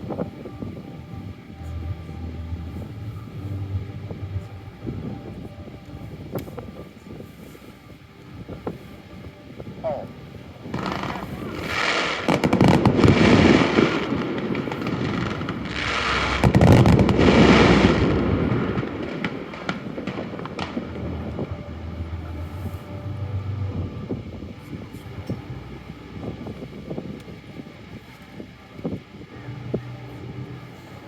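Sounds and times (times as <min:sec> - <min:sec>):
fireworks booming bursts: 0:09.6 - 0:24.5
crackling firework pops: 0:10.7 - 0:21.5.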